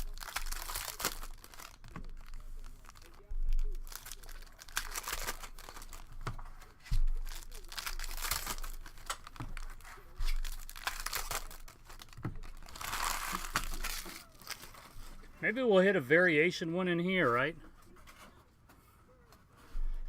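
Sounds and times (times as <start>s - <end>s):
wrappers crinkling and tearing: 0.0s - 15.2s
cards being handled: 0.0s - 15.3s.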